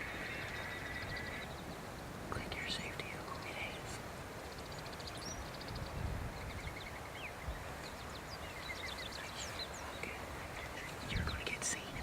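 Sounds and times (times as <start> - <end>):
songbirds chirping and trilling: 0.0 - 12.0.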